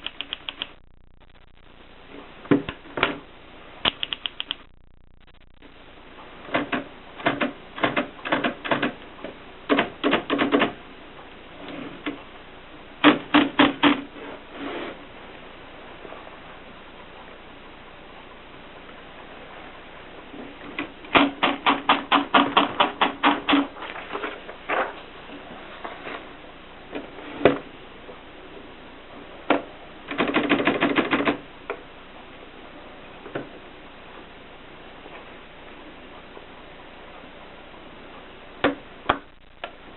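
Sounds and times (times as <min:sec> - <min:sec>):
typewriter keys clicking: 0:09.7 - 0:10.7.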